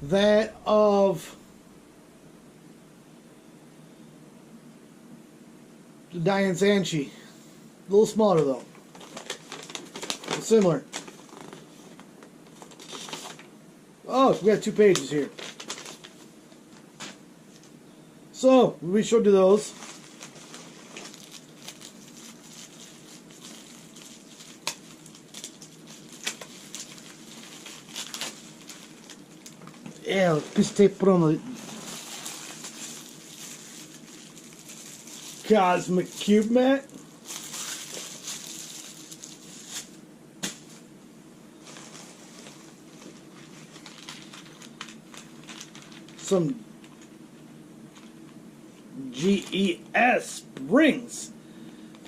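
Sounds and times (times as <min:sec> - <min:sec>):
paper rustling and crinkling: 0:08.4 - 0:13.5, 0:14.3 - 0:17.8, 0:19.6 - 0:40.9, 0:41.6 - 0:47.1, 0:47.9 - 0:48.3.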